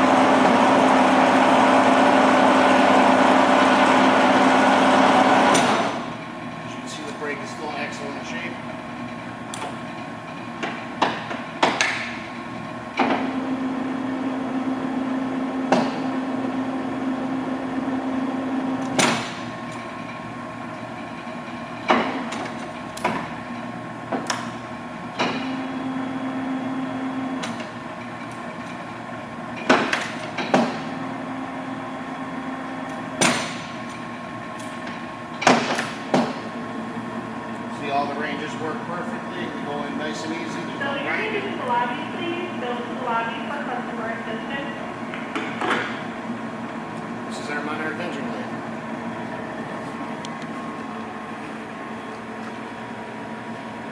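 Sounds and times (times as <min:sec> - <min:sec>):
lathe gearing hum: 0:00.0 - 0:53.9.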